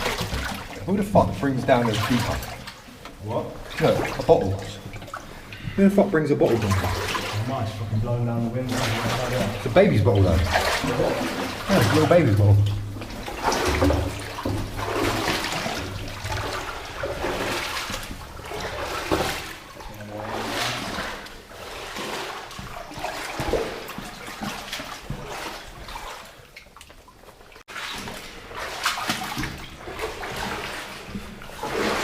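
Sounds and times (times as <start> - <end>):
footsteps wading through water: 0.0 - 32.0.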